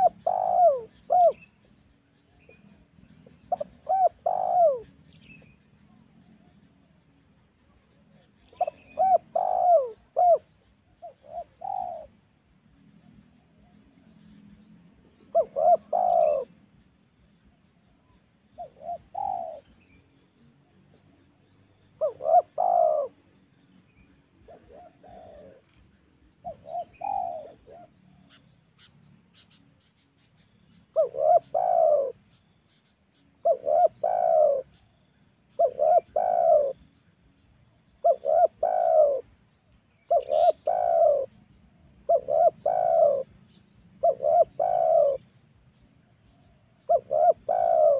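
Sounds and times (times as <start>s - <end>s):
dove cooing: 0.0s - 1.7s, 2.4s - 6.7s, 7.9s - 12.3s, 15.2s - 16.6s, 18.6s - 19.8s, 22.0s - 23.4s, 24.4s - 25.7s, 26.4s - 29.7s, 30.9s - 32.8s, 33.4s - 34.9s, 35.5s - 37.2s, 37.9s - 39.4s, 40.0s - 45.4s, 46.3s - 47.9s.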